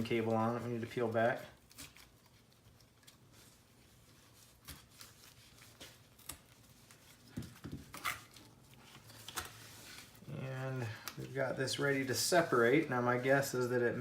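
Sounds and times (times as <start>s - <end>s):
adhesive tape peeling: 4.5s - 7.0s.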